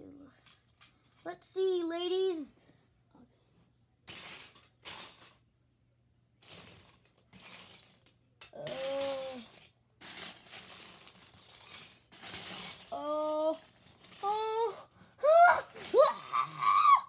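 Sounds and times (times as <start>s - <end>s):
plastic bricks clattering: 4.1s - 5.4s, 6.4s - 16.7s.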